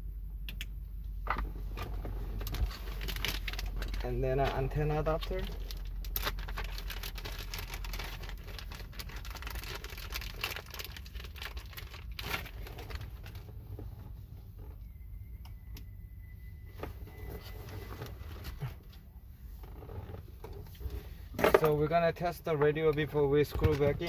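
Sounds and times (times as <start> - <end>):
faint high steady tone: 14.7 - 18.2.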